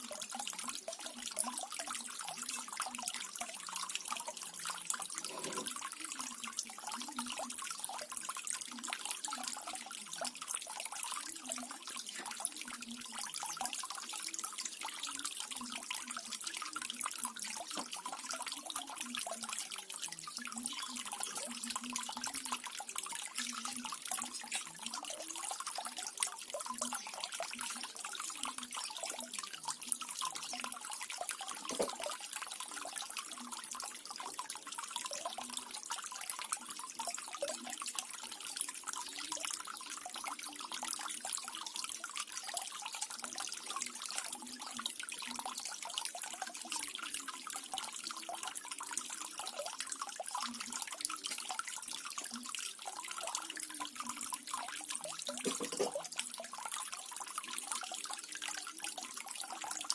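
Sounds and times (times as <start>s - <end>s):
small waterfall splashing: 55.2s - 56.3s.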